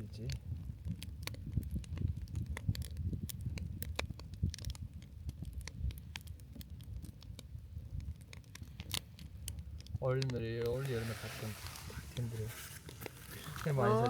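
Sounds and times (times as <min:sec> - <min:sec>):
campfire crackling and popping: 0:00.0 - 0:14.0.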